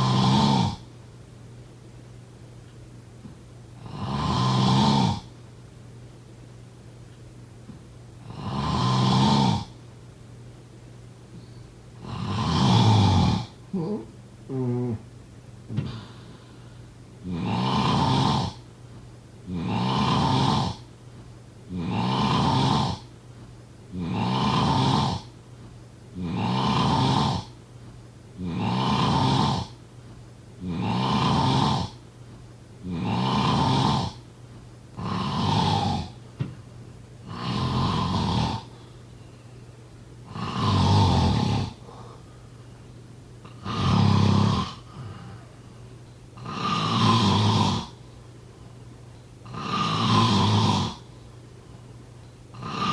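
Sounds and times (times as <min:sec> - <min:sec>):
person snoring: 0:00.0 - 0:00.8, 0:03.8 - 0:05.3, 0:08.2 - 0:09.8, 0:12.0 - 0:15.1, 0:15.7 - 0:16.6, 0:17.2 - 0:18.6, 0:19.5 - 0:20.9, 0:21.7 - 0:23.1, 0:23.9 - 0:25.3, 0:26.2 - 0:27.5, 0:28.4 - 0:29.8, 0:30.6 - 0:32.0, 0:32.8 - 0:34.2, 0:35.0 - 0:36.2, 0:37.2 - 0:38.8, 0:40.3 - 0:42.3, 0:43.4 - 0:45.6, 0:46.4 - 0:48.0, 0:49.4 - 0:51.1, 0:52.5 - 0:52.9.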